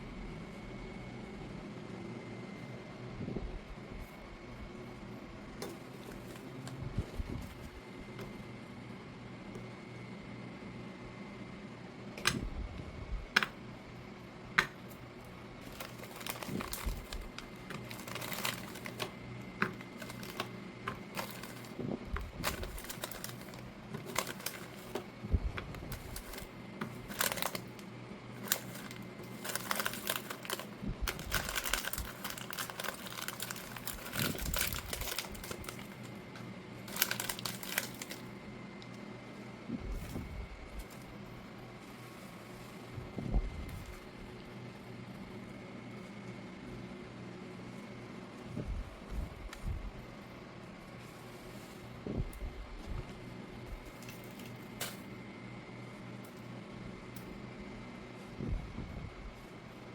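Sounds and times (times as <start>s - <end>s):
plastic wrappers crinkling: 15.6s - 36.2s, 36.8s - 38.3s, 53.7s - 55.1s.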